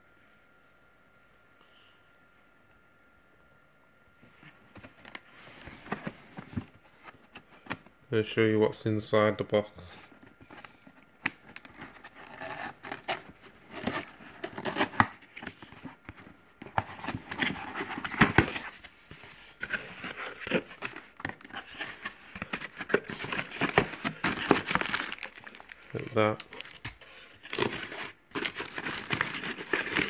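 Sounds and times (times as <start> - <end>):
cardboard packaging rustling: 4.4 - 7.9, 10.0 - 30.0.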